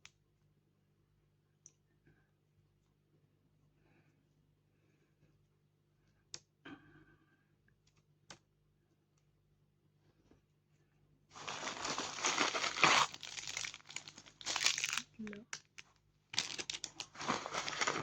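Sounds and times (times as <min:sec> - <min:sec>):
plastic packaging crinkling: 0:11.4 - 0:18.0.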